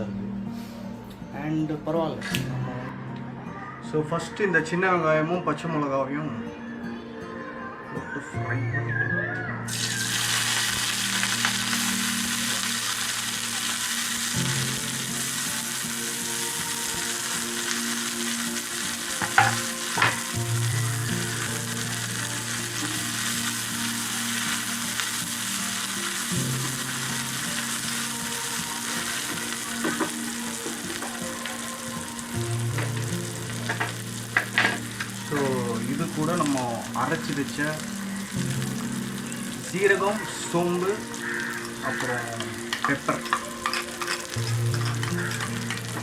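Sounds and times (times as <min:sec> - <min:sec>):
onions sizzling in hot oil: 0:09.7 - 0:46.0.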